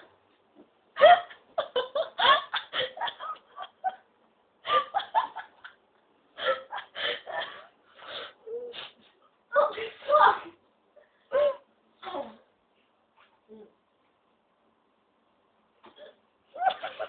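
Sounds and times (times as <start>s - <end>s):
person laughing: 1.0s - 4.0s, 16.6s - 17.0s.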